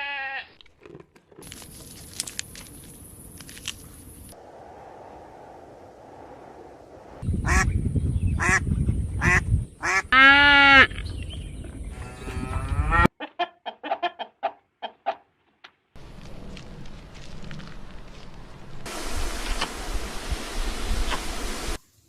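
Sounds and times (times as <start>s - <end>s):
farm fowl calling: 12.6s - 15.2s.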